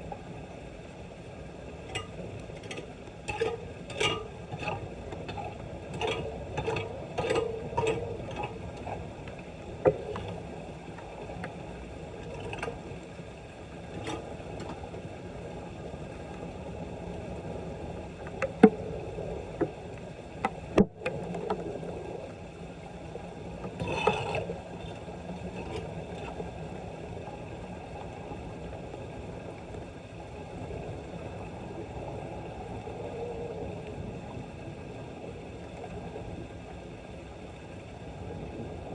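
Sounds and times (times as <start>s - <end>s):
floodwater sloshing and draining: 1.8s - 15.0s, 23.5s - 26.8s.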